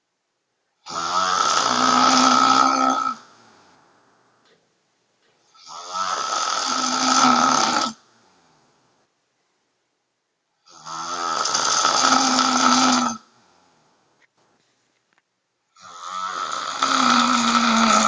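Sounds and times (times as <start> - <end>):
woman snoring loudly: 0.8 - 3.9, 5.5 - 8.1, 10.6 - 13.4, 15.8 - 18.0.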